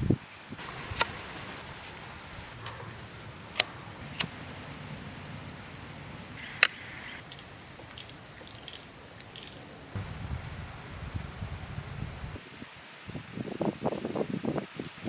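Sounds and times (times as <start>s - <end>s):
high-pitched insect trill: 3.3s - 12.4s
sharp clicks: 3.5s - 4.4s.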